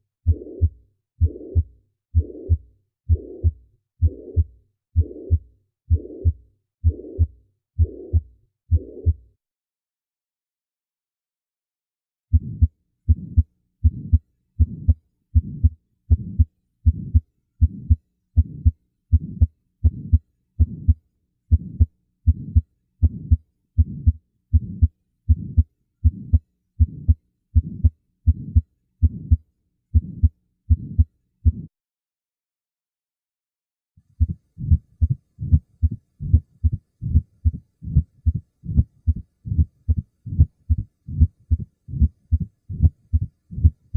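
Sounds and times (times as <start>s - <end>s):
heartbeat: 0.3s - 9.3s, 12.3s - 31.7s, 34.2s - 43.9s.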